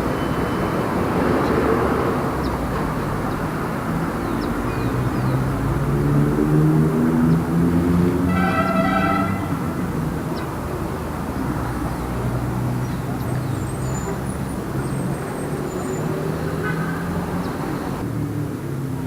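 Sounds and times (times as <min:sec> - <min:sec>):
passing car engines humming: 0:00.0 - 0:19.0
road noise: 0:00.0 - 0:19.0.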